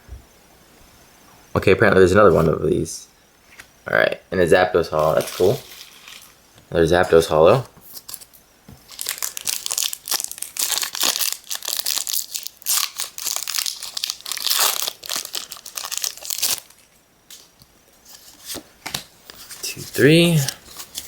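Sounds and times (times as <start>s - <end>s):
packaging crinkling and tearing: 5.0s - 6.4s, 7.9s - 19.1s.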